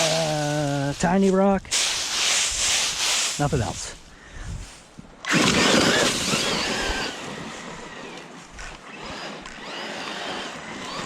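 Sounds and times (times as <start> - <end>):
electric motor whine: 5.2 - 11.0.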